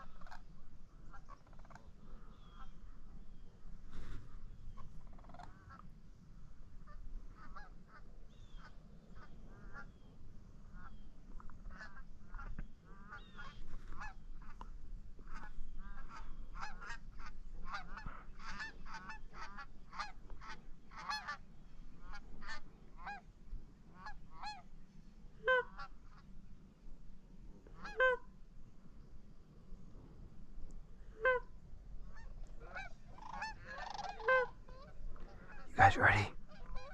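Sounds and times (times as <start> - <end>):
flock of geese honking: 0.0 - 2.8, 11.7 - 14.6, 15.3 - 21.4, 23.9 - 24.7, 25.4 - 26.3, 27.8 - 28.3, 32.1 - 35.6.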